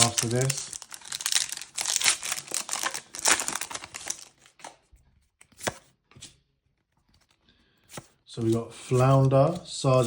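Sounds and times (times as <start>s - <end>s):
wrapper crinkling: 0.0s - 4.6s.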